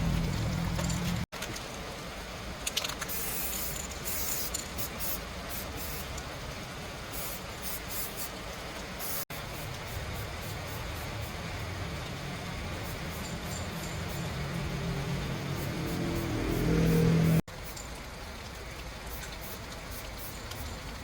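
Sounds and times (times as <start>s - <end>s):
low hum: 0.0s - 1.3s, 9.3s - 17.4s
steady background noise: 0.0s - 21.0s
spray hissing: 3.1s - 6.2s, 7.1s - 8.4s, 9.0s - 17.4s.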